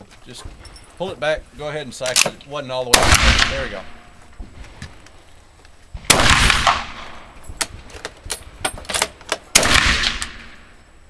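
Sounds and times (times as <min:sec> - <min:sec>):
rifle shots with echo: 0:02.9 - 0:04.1, 0:06.0 - 0:07.3, 0:09.5 - 0:10.7.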